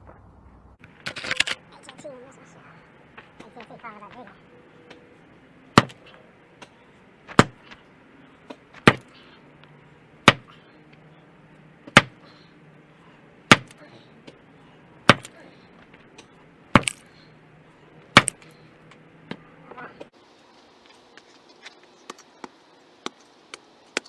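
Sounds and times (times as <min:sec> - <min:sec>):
hand tool striking rock: 0:05.8 - 0:06.0, 0:07.3 - 0:07.7, 0:08.8 - 0:09.1, 0:10.3 - 0:10.6, 0:11.9 - 0:12.2, 0:13.5 - 0:13.8, 0:15.1 - 0:15.4, 0:16.8 - 0:17.1, 0:18.2 - 0:18.5.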